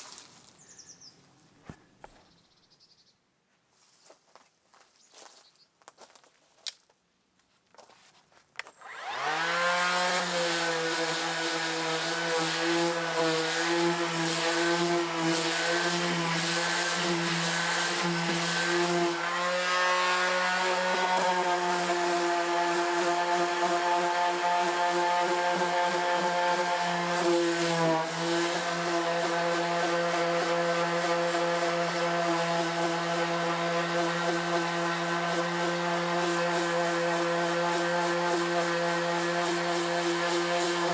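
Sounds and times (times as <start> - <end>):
electric power tool running: 8.7 - 40.9.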